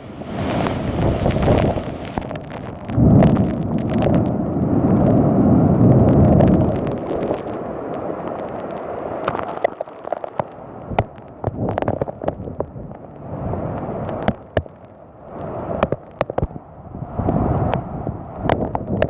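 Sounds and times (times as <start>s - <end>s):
thunder rumbling: 0.0s - 9.4s
crackles: 0.0s - 19.0s.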